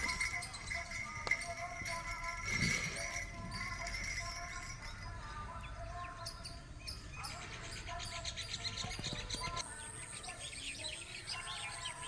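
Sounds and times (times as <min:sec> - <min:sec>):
small birds chirping: 0:04.5 - 0:12.0.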